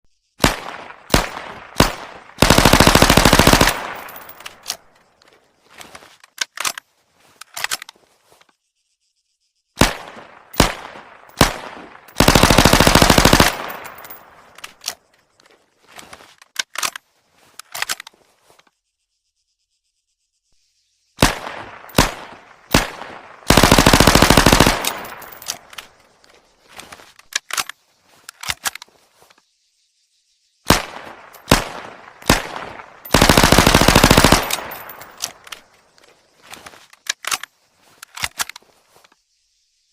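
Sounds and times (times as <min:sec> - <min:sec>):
automatic gunfire burst: 0:00.4 - 0:04.1, 0:11.4 - 0:14.0, 0:21.2 - 0:25.2, 0:30.7 - 0:35.4
submachine gun single shots: 0:00.4 - 0:04.8, 0:09.8 - 0:14.8, 0:21.2 - 0:26.0, 0:30.7 - 0:35.7.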